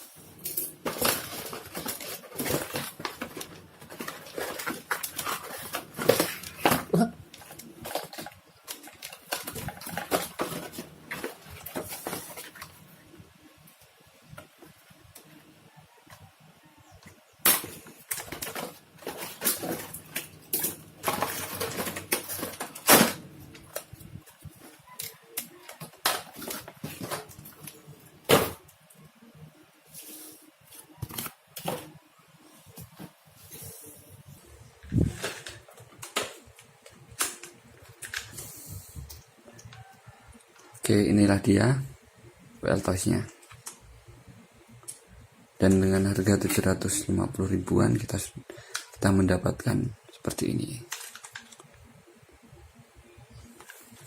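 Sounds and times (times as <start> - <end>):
toy car and packaging handled: 0.0 - 15.4, 17.3 - 40.8, 50.3 - 52.0, 53.3 - 54.0.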